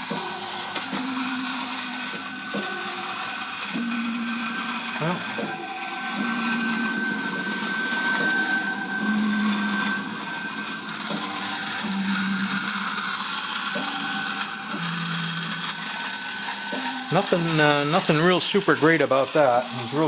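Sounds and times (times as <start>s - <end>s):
low buzz: 0.0s - 20.0s
wind-up toy robot whirring: 0.0s - 20.0s.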